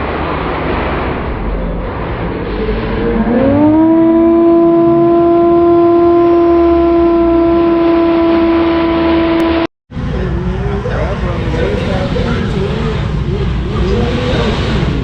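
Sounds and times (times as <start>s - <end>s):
off-road vehicle engines rumbling: 0.0s - 15.0s
air horn blast: 2.7s - 9.7s.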